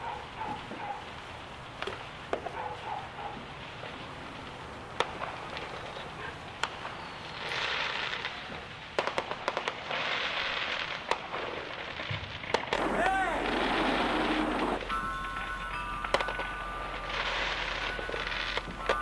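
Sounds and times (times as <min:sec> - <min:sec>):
sharp pops: 0:04.4 - 0:09.9, 0:12.0 - 0:15.0.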